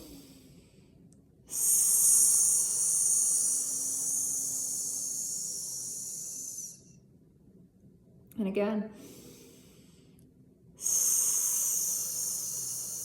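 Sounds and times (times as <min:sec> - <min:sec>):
woman hissing breath through teeth: 0:01.5 - 0:06.9, 0:10.8 - 0:13.0.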